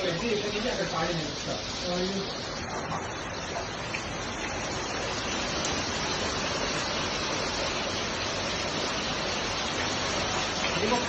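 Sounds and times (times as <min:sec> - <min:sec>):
water gushing: 0:00.0 - 0:11.0.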